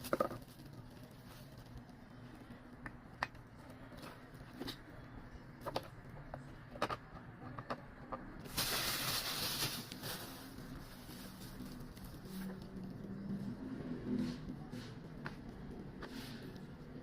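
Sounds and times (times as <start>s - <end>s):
plastic packaging rustling: 8.4s - 12.8s.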